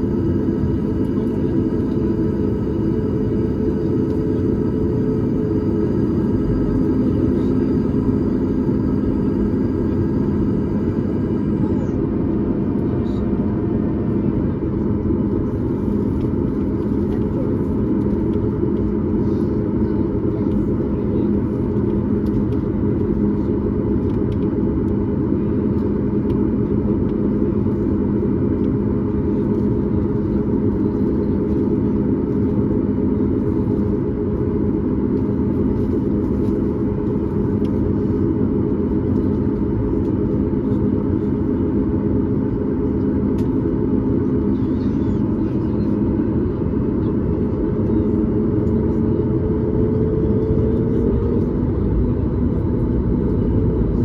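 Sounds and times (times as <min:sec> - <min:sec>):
steady cabin hum: 0:00.0 - 0:12.8
airplane cabin rumble: 0:00.0 - 0:54.0.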